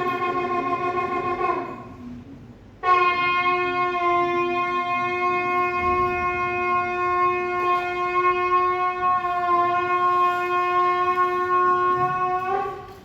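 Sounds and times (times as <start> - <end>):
ram's horn blast: 2.8 - 13.0.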